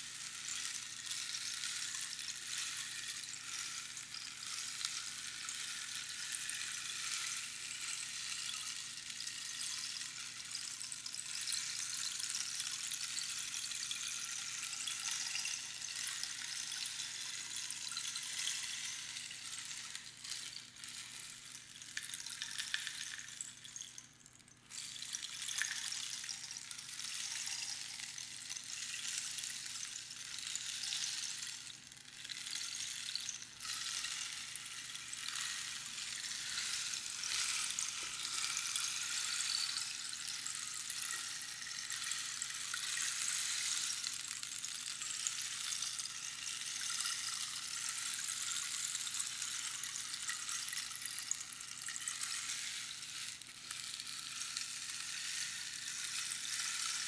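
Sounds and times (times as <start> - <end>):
rainstick pattering: 0.0 - 57.0.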